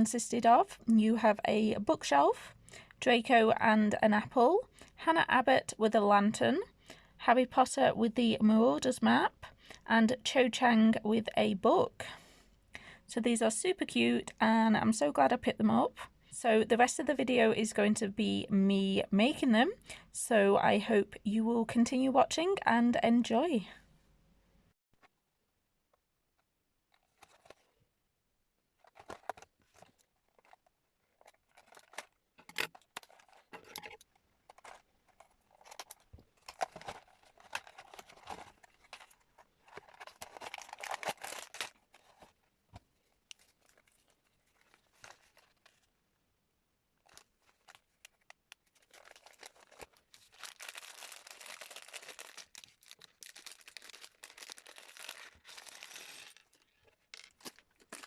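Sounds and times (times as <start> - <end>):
plastic bags crinkling and tearing: 28.8 - 42.4, 43.0 - 45.9, 47.0 - 58.0.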